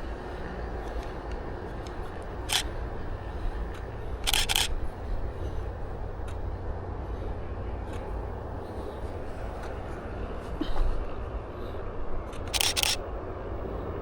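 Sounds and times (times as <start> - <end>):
steady low rumble: 0.0 - 14.0
camera shutter clicks: 2.5 - 2.7, 4.2 - 4.8, 12.3 - 13.0.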